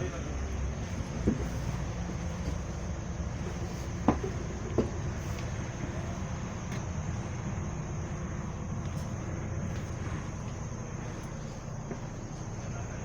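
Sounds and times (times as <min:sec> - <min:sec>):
bus engine and road rumble: 0:00.0 - 0:13.0.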